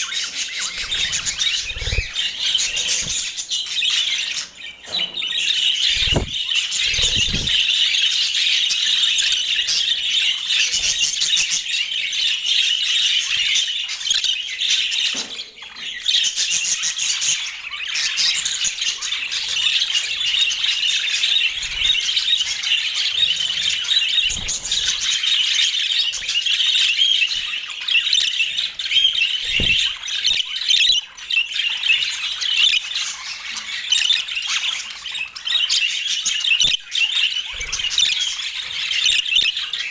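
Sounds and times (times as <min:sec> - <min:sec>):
budgerigars chattering and chirping: 0:00.0 - 0:05.2, 0:05.8 - 0:07.8, 0:26.1 - 0:39.9.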